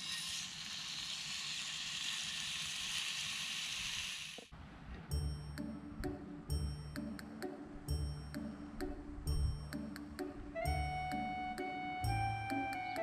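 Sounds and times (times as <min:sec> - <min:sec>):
music: 0:05.0 - 0:13.0.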